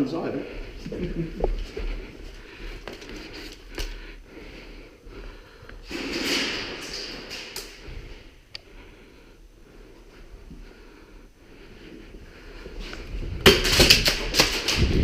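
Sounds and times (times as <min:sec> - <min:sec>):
rustling near microphone: 0:00.0 - 0:09.1.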